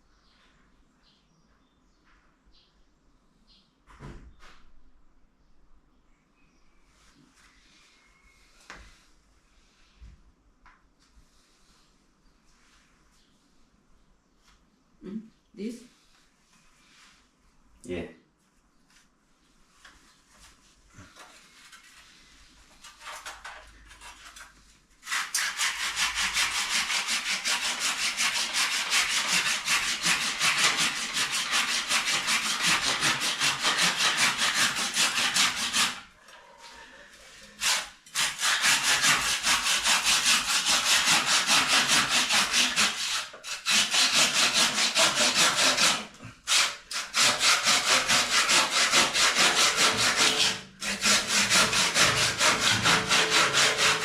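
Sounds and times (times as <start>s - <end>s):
hand saw cutting: 25.0s - 36.1s, 37.4s - 54.0s.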